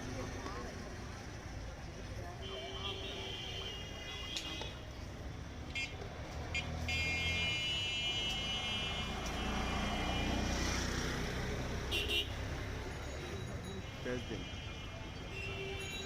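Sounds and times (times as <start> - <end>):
engines rumbling: 0.0 - 16.0
vehicle horn: 5.7 - 10.6, 11.9 - 12.4.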